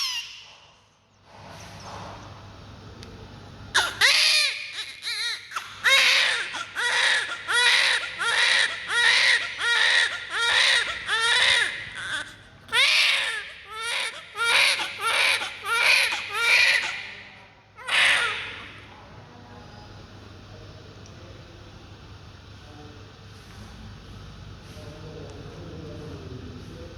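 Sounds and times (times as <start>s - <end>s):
baby crying: 3.8s - 17.0s, 17.8s - 18.5s.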